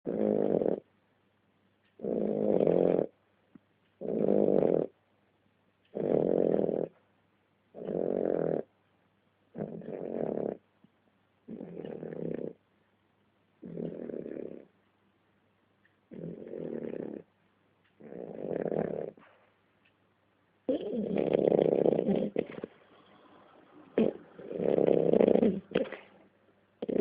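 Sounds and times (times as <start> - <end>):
dog snoring: 0.1 - 0.9, 2.0 - 3.2, 4.0 - 5.0, 5.9 - 7.0, 7.7 - 8.7, 9.5 - 10.7, 11.5 - 12.6, 13.6 - 14.7, 16.1 - 17.3, 18.0 - 19.4, 20.7 - 26.2, 26.8 - 27.0.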